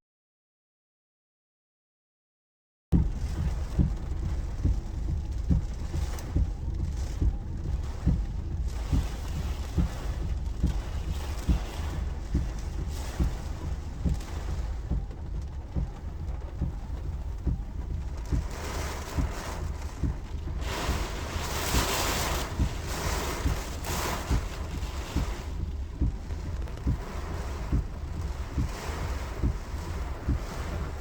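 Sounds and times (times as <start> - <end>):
wind buffeting microphone: 3.0 - 31.0
rushing hiss of gust: 18.6 - 31.0.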